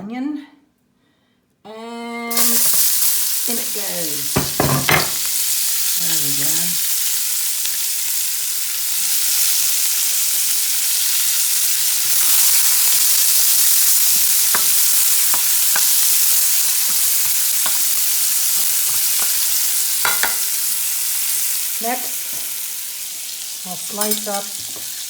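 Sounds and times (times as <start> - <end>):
onion sizzling in butter: 2.3 - 25.0.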